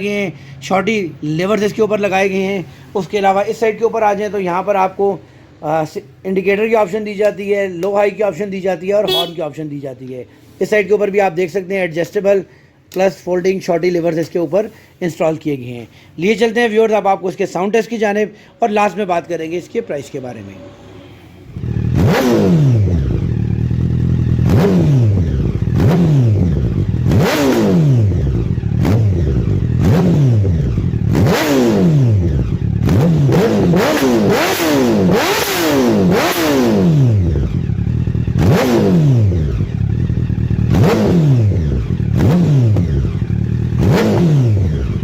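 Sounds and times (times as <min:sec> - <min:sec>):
motorcycle engine revving: 0:09.1 - 0:09.4, 0:20.8 - 0:45.0.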